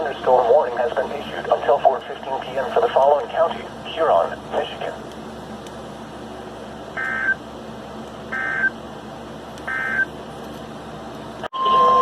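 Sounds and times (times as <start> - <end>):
loud steady tone: 6.9 - 7.5, 8.3 - 8.9, 9.6 - 10.2, 11.4 - 12.0.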